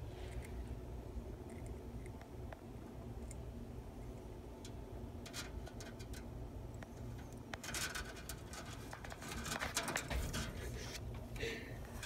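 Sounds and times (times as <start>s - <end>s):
faint low hum: 0.0s - 12.0s
hermit crab clicking and scratching: 5.2s - 11.2s.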